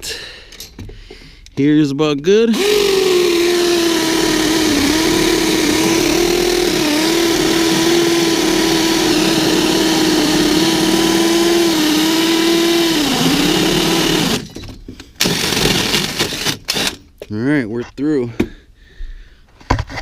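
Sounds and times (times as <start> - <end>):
power drill boring into wood: 2.5 - 14.5, 15.2 - 17.0.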